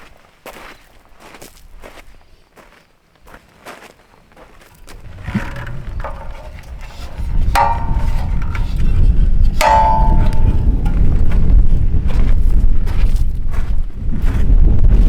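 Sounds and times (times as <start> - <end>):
wind buffeting microphone: 4.8 - 15.0
ringing metallic clangs: 5.0 - 11.6.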